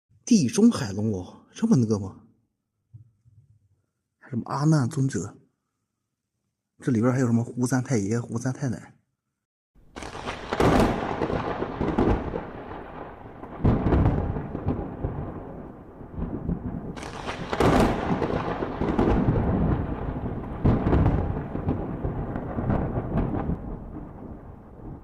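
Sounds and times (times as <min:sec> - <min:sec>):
rolling thunder: 0:09.9 - 0:25.0.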